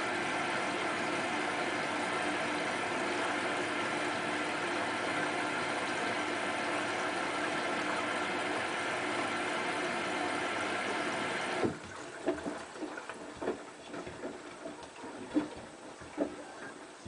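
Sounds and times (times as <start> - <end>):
washing machine running: 0.0 - 17.0
knocks and clunks of drum: 11.6 - 14.4.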